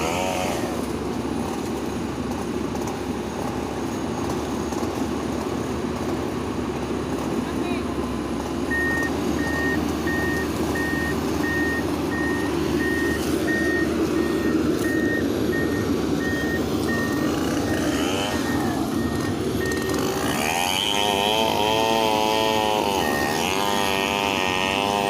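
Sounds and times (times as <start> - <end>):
diesel engine running: 0.0 - 25.0
excavator travel alarm beeping: 8.6 - 20.7, 22.6 - 23.7.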